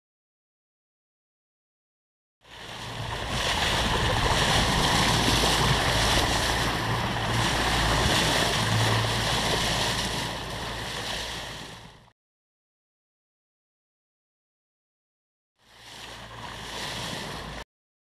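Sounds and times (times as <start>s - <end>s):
rush of wind and water: 2.4s - 12.1s, 15.6s - 17.6s
boat engine hum: 2.5s - 12.1s, 15.6s - 17.6s.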